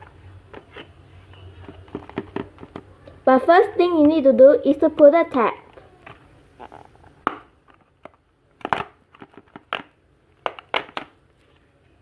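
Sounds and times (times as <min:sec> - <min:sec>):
plastic package crackling: 0:06.6 - 0:11.2.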